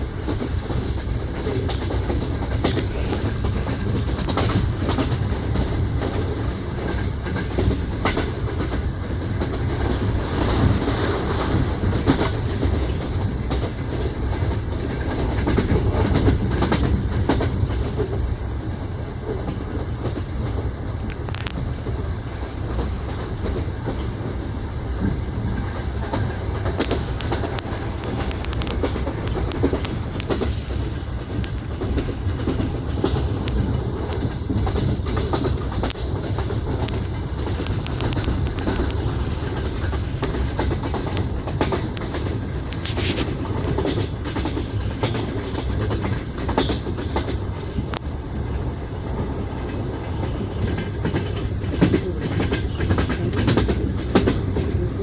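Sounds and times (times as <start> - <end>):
train wheels knocking over rail joints: 0.0 - 18.3, 19.3 - 48.1, 49.2 - 55.0
train carriage running rumble: 0.0 - 55.0.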